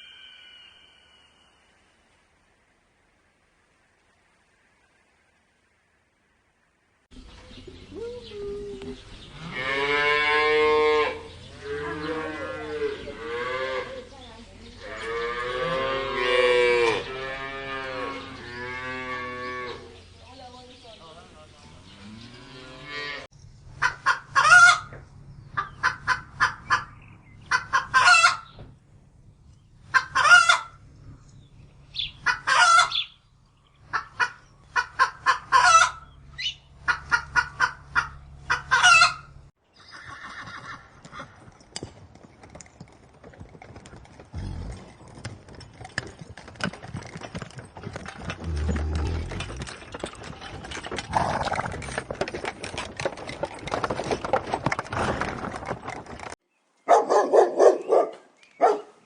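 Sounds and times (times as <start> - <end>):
chickens clucking: 23.8 - 28.6, 29.9 - 30.8, 32.0 - 33.1, 33.9 - 39.3.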